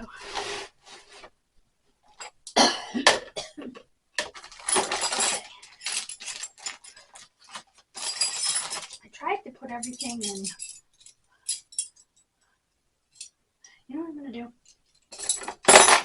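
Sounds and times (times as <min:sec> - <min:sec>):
hand tools clinking into toolbox: 0:04.2 - 0:09.0, 0:09.7 - 0:12.1, 0:14.7 - 0:16.0.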